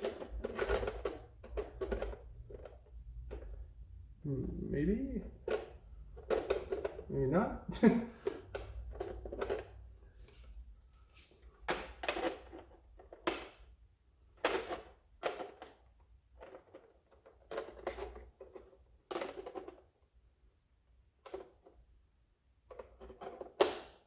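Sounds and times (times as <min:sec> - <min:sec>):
hard plastic parts knocking: 0:00.0 - 0:03.8, 0:05.2 - 0:07.1.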